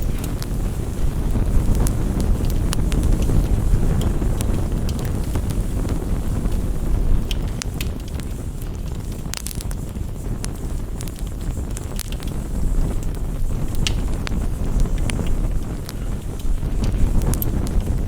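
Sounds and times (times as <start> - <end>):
campfire crackling: 0.0 - 18.0
fire pops and snaps: 0.0 - 18.0.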